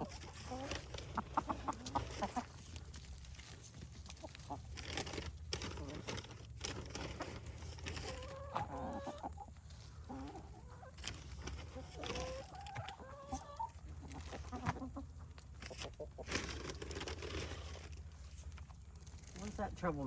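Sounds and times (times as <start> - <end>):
hens clucking: 0.0 - 20.0.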